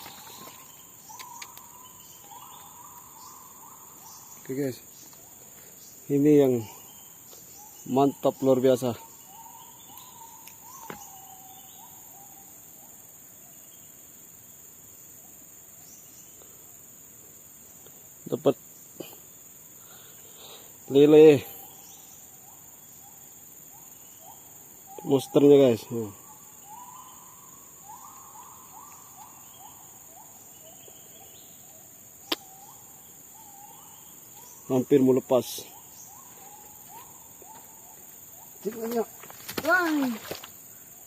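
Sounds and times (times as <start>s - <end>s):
insect chorus droning: 0.0s - 41.0s.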